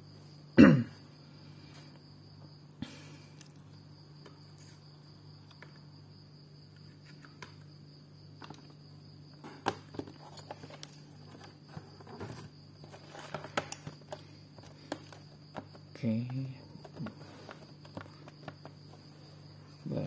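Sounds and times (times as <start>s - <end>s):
laptop handled on a table: 9.4s - 15.8s.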